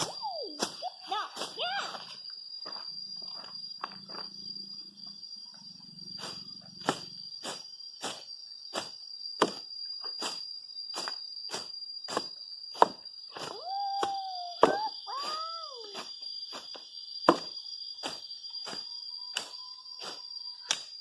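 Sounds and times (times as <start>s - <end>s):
short wavering calls: 0.0s - 1.3s, 13.4s - 16.0s
high-pitched insect drone: 0.0s - 21.0s.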